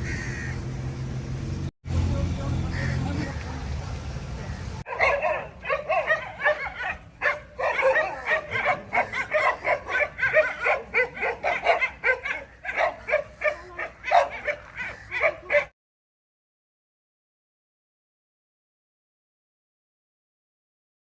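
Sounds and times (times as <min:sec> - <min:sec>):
dogs yipping and whining: 0:04.9 - 0:15.7.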